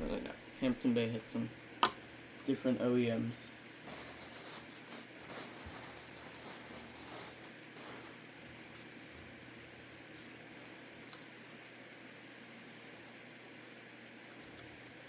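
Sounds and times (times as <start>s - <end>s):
steady low hiss: 0.0s - 15.0s
faint rustling and handling: 3.7s - 15.0s.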